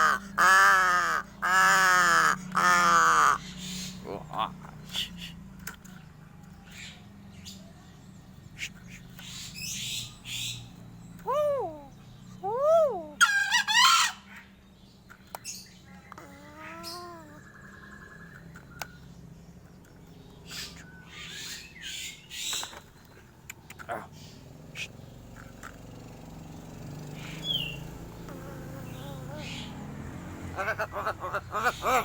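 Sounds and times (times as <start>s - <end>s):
crow calling: 0.0s - 4.6s, 27.2s - 32.0s.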